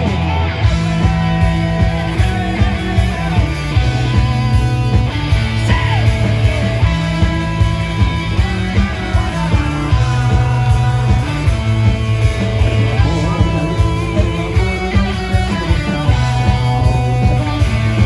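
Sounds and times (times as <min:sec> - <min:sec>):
loud rock music: 0:00.0 - 0:18.0.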